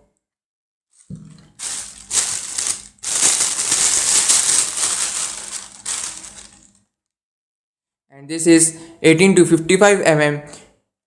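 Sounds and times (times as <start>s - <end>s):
plastic packaging crinkling: 1.6s - 6.7s.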